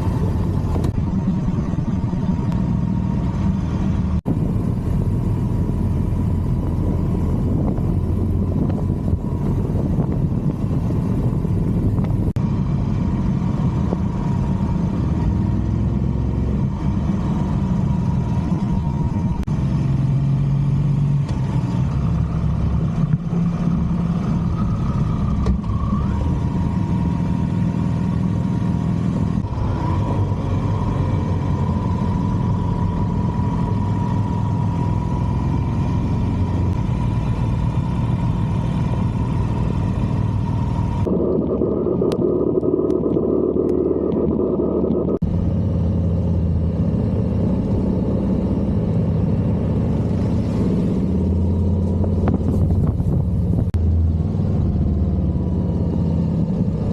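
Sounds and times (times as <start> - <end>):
motorcycle engine running: 0.0 - 20.5, 21.2 - 54.3.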